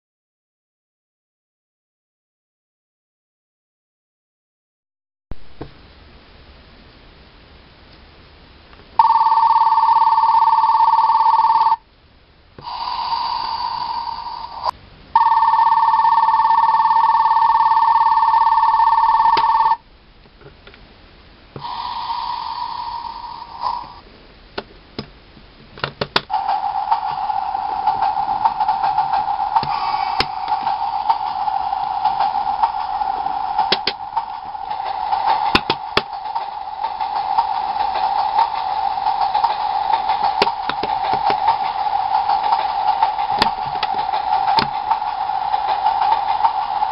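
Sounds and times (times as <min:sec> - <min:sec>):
electric departure bell ringing: 0:09.0 - 0:11.8, 0:15.2 - 0:19.8
electronic railway sound effects: 0:12.6 - 0:19.8, 0:21.6 - 0:24.0, 0:26.3 - 0:46.9
steady electronic tone: 0:26.3 - 0:46.9.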